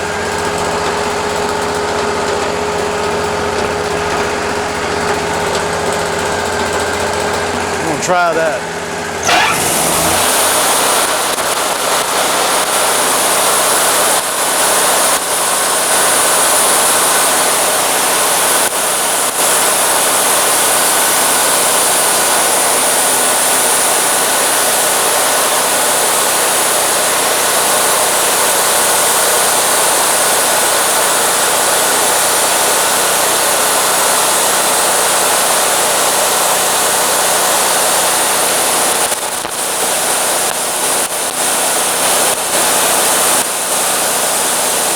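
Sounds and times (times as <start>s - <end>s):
sawmill engine hum: 0.0s - 44.9s
band saw blade cutting log: 7.8s - 11.6s.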